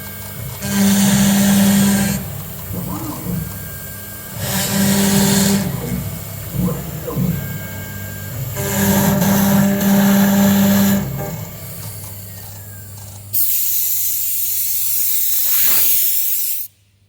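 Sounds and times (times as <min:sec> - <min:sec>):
router cutting noise: 0:00.0 - 0:11.5
cnc router humming: 0:00.0 - 0:13.3.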